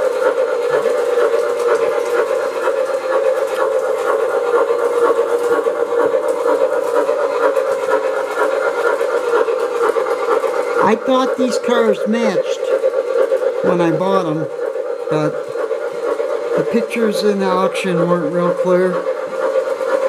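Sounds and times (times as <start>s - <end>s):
model train running on track: 0.0s - 20.0s.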